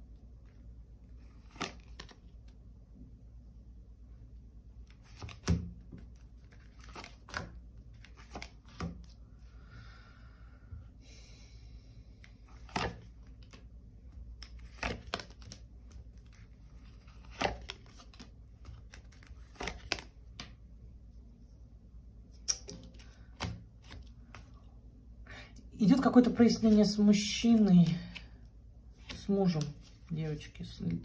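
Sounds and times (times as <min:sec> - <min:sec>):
cards rustling: 0:00.4 - 0:02.6, 0:04.8 - 0:09.2, 0:12.2 - 0:20.6, 0:28.9 - 0:31.0
cards snapping and slapping: 0:01.3 - 0:02.3, 0:04.9 - 0:09.2, 0:12.5 - 0:13.7, 0:14.3 - 0:20.6, 0:22.4 - 0:24.5.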